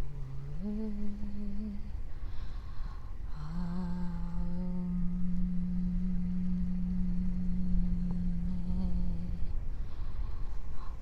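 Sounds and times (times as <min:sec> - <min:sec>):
low rumbling noise: 0:00.0 - 0:11.0
person humming a held note: 0:03.3 - 0:09.7.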